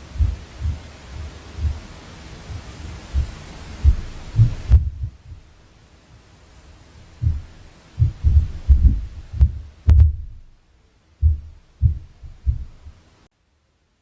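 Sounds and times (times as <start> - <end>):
dull thumps of footsteps upstairs: 0.0 - 5.6, 7.2 - 10.6, 11.2 - 13.0.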